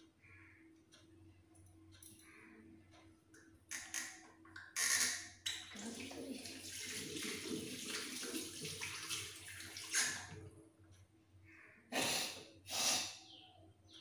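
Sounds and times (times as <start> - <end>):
tap water running into basin: 5.5 - 10.5.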